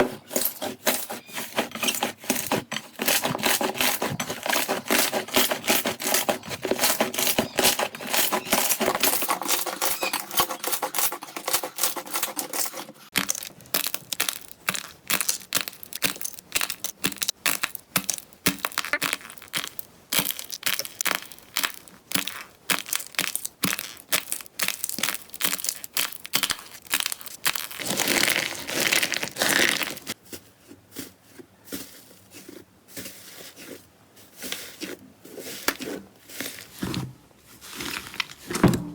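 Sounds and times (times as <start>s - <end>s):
slime crackling and crunching: 13.1s - 30.2s.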